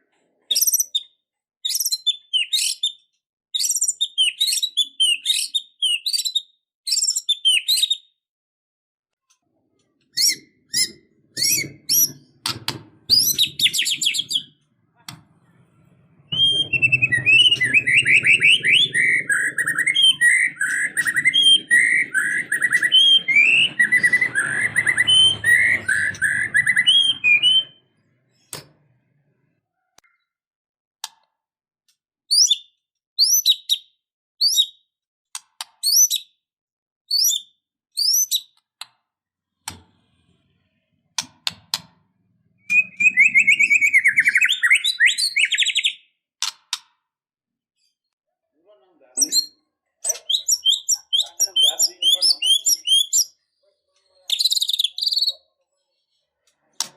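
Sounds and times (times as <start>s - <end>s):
bird singing: 1.7s - 8.1s, 9.8s - 14.7s, 15.8s - 28.6s, 42.5s - 46.2s, 48.6s - 53.4s, 54.1s - 55.5s
bird whistles sweeping down: 42.7s - 45.9s.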